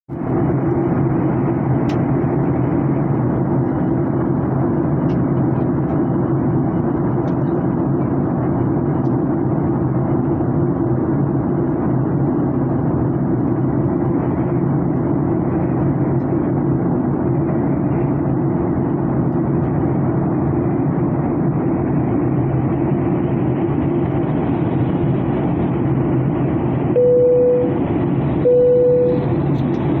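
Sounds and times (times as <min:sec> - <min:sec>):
airliner cabin rumble: 0:00.1 - 0:30.0
short steady beeps: 0:27.0 - 0:27.8, 0:28.4 - 0:29.3.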